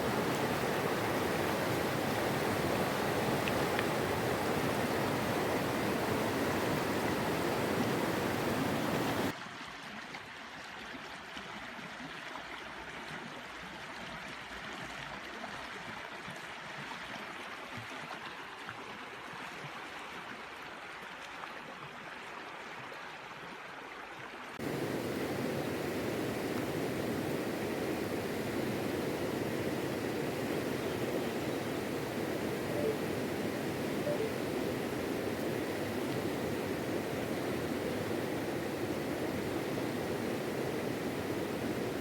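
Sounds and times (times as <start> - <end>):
river water flowing: 0.0 - 10.0, 20.2 - 42.0.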